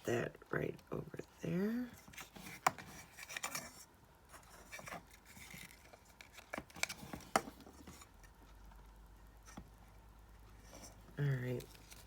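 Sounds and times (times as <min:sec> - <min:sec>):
packaging rustling: 0:04.4 - 0:08.1, 0:11.6 - 0:12.0.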